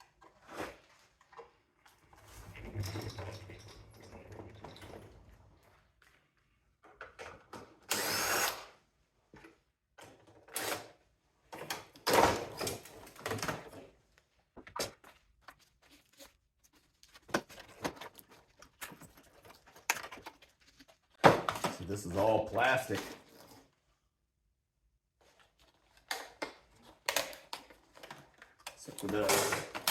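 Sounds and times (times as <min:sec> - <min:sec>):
clicks and knocks of parts handled: 0:25.6 - 0:29.9.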